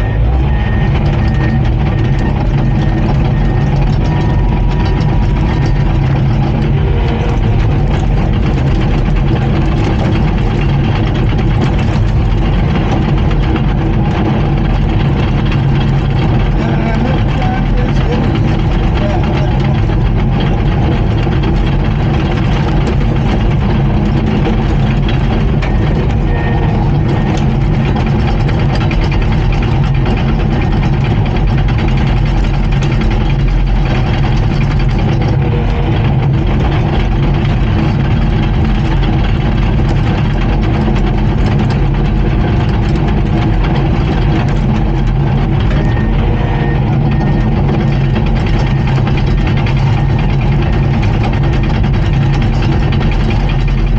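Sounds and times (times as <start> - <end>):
bulldozer diesel engine running: 0.0 - 53.9.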